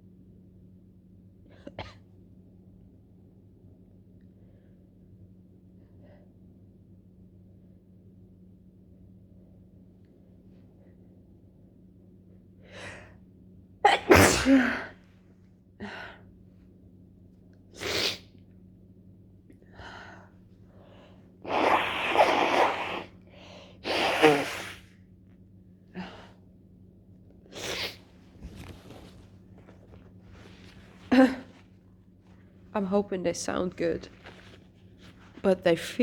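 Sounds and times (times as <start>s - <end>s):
woman sneezing: 13.9s - 15.0s, 21.4s - 23.2s, 23.8s - 24.9s, 31.0s - 31.6s.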